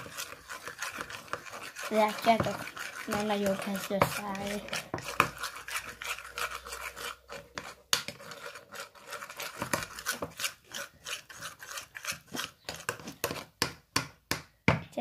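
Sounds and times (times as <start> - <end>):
slime scraped in a bowl: 0.0 - 13.6.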